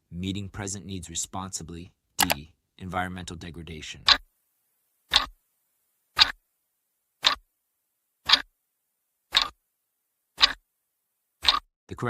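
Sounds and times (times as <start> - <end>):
clock ticking: 2.2 - 2.4.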